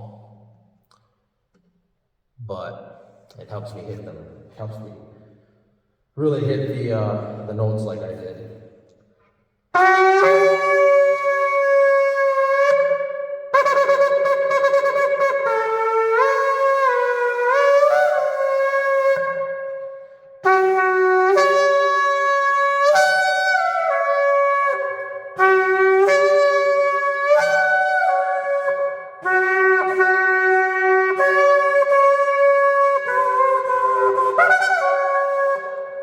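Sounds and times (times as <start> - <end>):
shofar blasts: 9.8 - 36.0.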